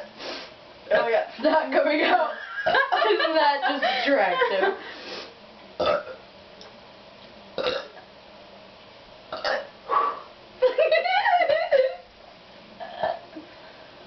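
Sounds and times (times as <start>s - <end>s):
person burping: 5.8s - 6.2s, 7.6s - 8.0s, 9.3s - 9.8s.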